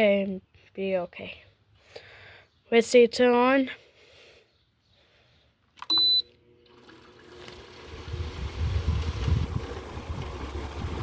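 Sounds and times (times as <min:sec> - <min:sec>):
short electronic beep: 0:05.9 - 0:06.3
air conditioner fan rumble: 0:06.6 - 0:11.0.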